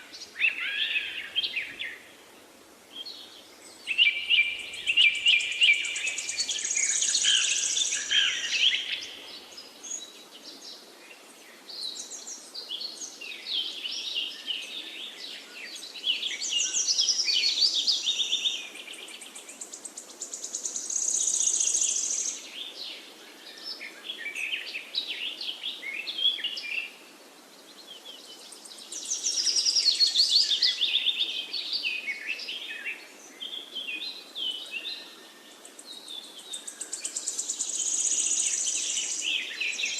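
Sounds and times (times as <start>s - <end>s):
low hiss: 0.0s - 39.9s
songbirds chirping and trilling: 0.0s - 39.9s.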